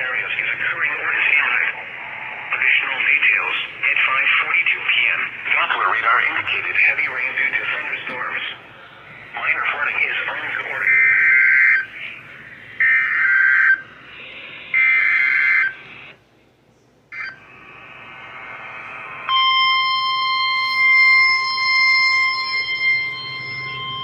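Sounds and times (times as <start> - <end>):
steady warning alarm tone: 0.0 - 16.2, 17.1 - 24.0
radio click and hiss: 0.1 - 8.5.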